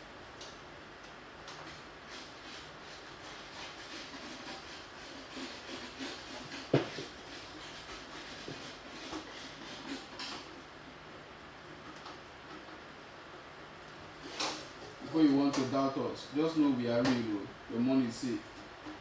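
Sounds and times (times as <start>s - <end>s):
soft handling knocks and rubbing: 6.4s - 7.4s.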